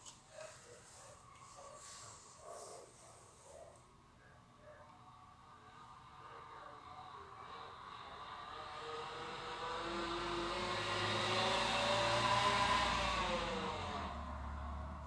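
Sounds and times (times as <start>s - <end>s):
vehicle passing by: 7.4s - 15.0s.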